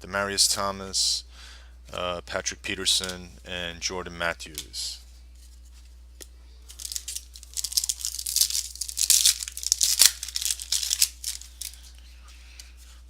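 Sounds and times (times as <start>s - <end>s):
foil wrapper tearing and crinkling: 6.7s - 11.8s.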